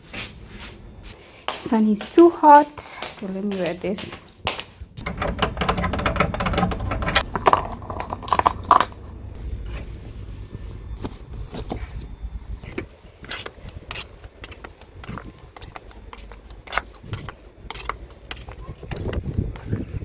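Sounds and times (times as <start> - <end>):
metallic rattling and clicking: 5.0 - 9.4
low rumble: 6.0 - 12.7.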